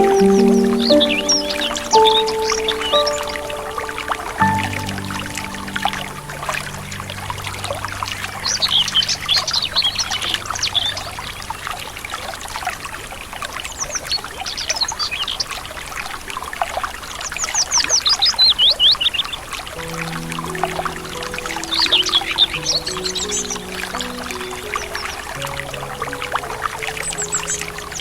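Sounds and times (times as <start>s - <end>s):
bird chirping: 0.0s - 11.6s
river water trickling: 0.0s - 28.0s.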